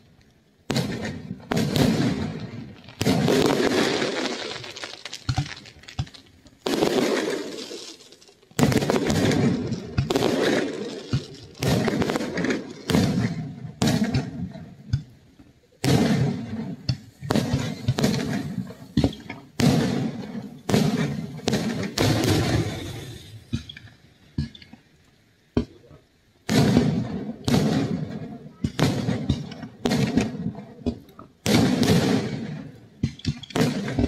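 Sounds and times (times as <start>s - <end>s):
firework shells bursting: 0.7s - 15.1s, 15.8s - 24.8s.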